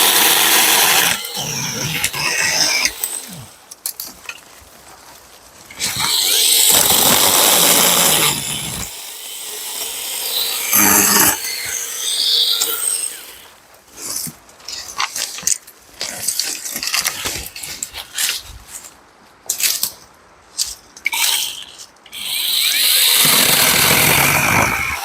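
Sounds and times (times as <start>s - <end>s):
mini chainsaw cutting wood: 0.0s - 3.6s, 5.7s - 13.5s, 22.2s - 25.0s.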